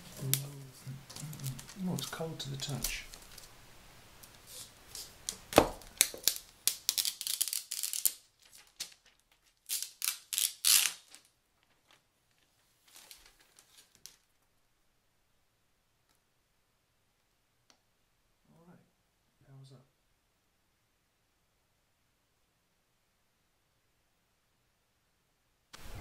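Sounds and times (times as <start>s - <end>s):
faint rustles: 0.0s - 3.6s
packaging crinkling and tearing: 0.1s - 3.6s, 4.9s - 14.3s.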